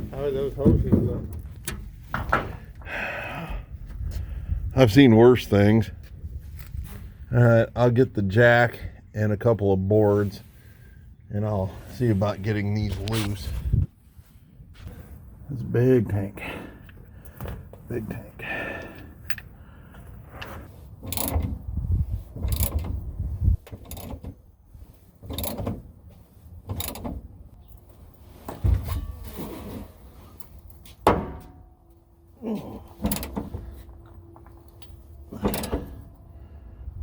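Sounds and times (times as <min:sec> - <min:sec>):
tools clunking and scraping: 0:00.0 - 0:02.8, 0:18.9 - 0:36.5.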